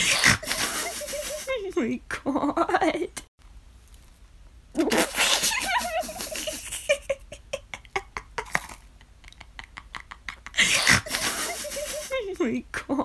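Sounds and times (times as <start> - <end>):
person laughing: 0.0 - 3.2, 4.8 - 13.0.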